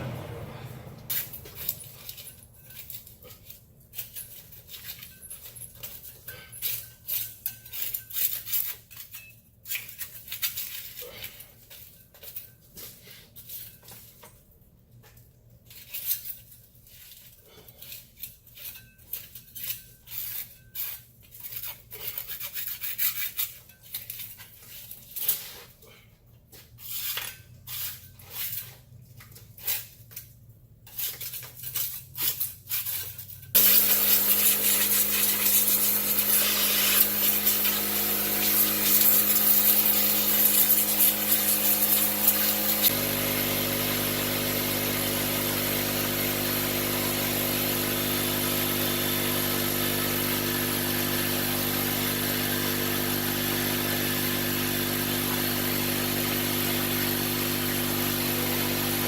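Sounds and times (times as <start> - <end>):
motor running: 33.6 - 59.0.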